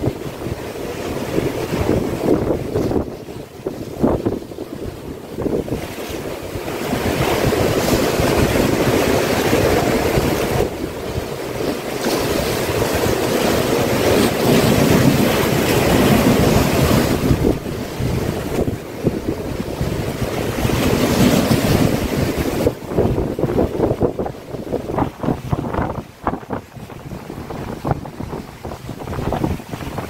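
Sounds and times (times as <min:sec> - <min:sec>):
sea waves washing ashore: 0:00.0 - 0:30.0
wind buffeting microphone: 0:00.0 - 0:30.0.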